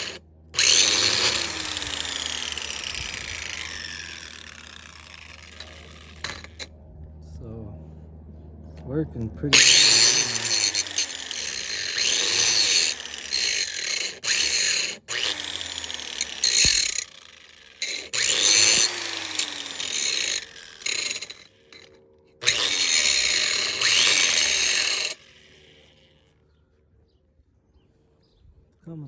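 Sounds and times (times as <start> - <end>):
angle grinder grinding metal: 0.0 - 6.7, 9.5 - 26.2.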